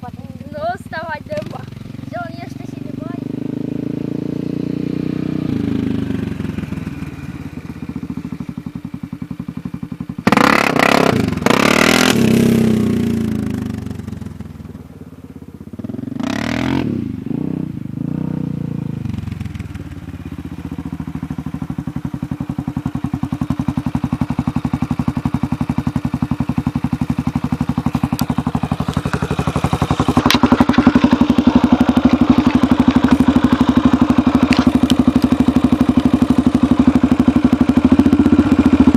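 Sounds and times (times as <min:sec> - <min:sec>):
atv engine revving: 0:00.0 - 0:38.9.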